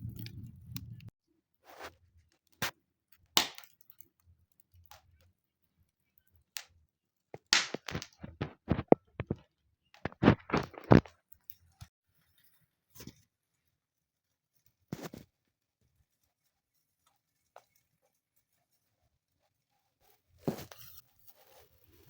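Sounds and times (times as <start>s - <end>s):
wood fire crackling: 0.0s - 1.1s, 7.4s - 9.4s.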